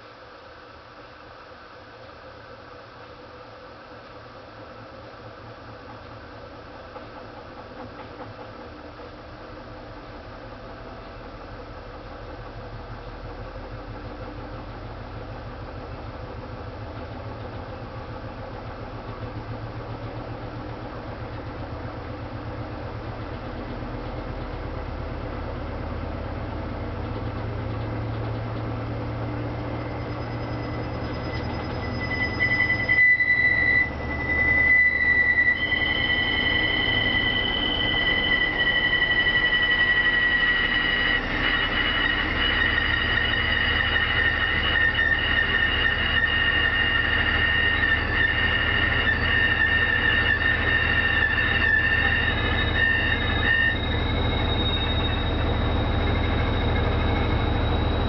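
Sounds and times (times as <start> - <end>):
loud high-pitched squeal: 28.8 - 58.0.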